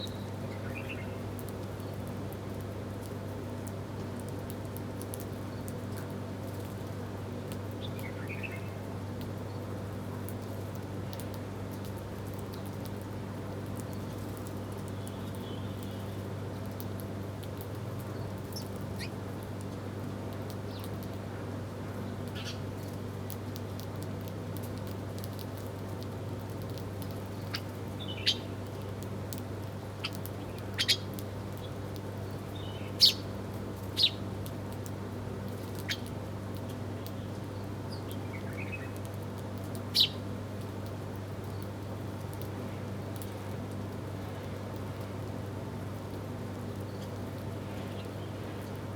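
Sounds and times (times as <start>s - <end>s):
small birds chirping: 0.0s - 2.1s, 7.8s - 8.8s, 20.5s - 21.1s, 22.0s - 23.0s, 26.8s - 29.1s, 29.9s - 34.3s, 35.5s - 39.0s, 39.8s - 40.2s.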